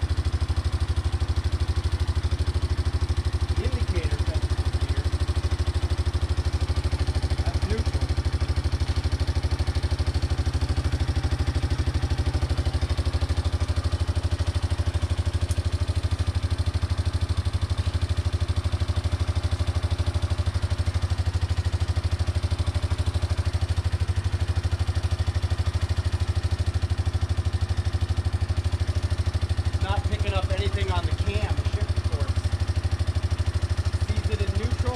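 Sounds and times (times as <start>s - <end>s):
engine idling: 0.0s - 34.9s.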